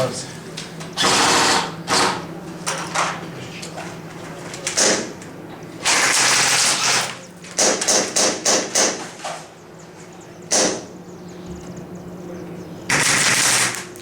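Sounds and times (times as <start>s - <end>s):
airsoft guns firing: 5.8s - 9.0s, 10.5s - 10.8s, 12.9s - 13.9s.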